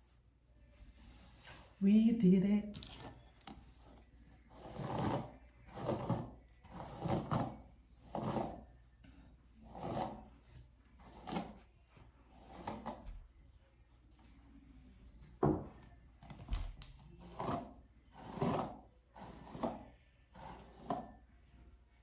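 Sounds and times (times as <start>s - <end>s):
soft rubbing strokes: 0.6s - 2.0s.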